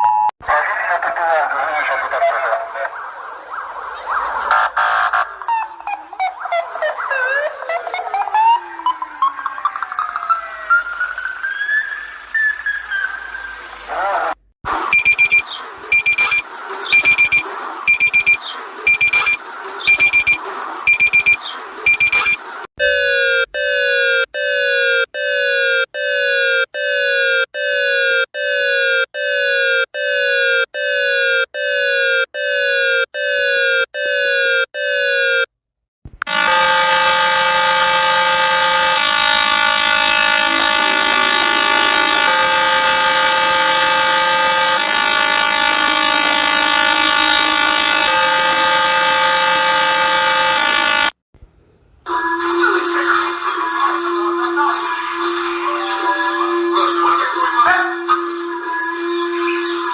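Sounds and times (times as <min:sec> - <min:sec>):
falling alarm tone: 0:14.9 - 0:23.9, 0:36.3 - 0:51.1
held chord of alarm tones: 0:14.9 - 0:24.7, 0:36.4 - 0:51.1.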